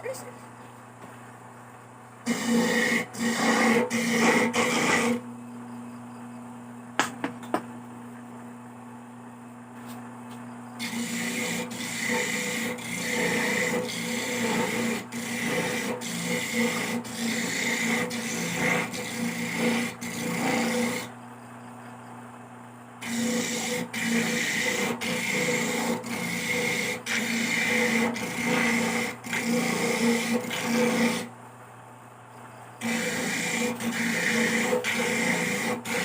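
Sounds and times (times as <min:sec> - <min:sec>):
coconut scraped on metal grater: 0:02.3 - 0:05.2, 0:10.8 - 0:21.1, 0:23.0 - 0:31.3, 0:32.8 - 0:36.0.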